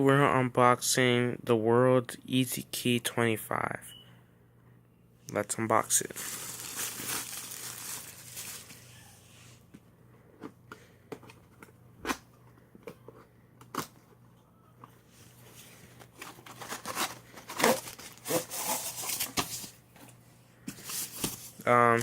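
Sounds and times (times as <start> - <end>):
packaging rustling and scraping: 6.1 - 9.2, 15.0 - 20.1, 20.7 - 22.0.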